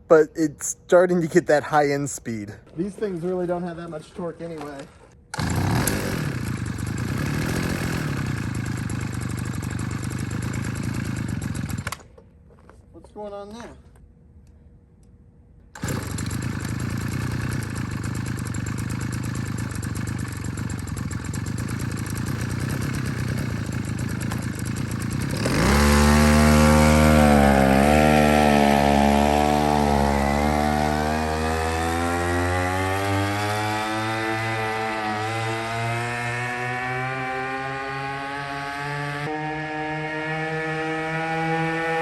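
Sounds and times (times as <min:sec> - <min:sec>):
small gasoline engine running: 0:05.3 - 0:12.0, 0:15.8 - 0:38.7.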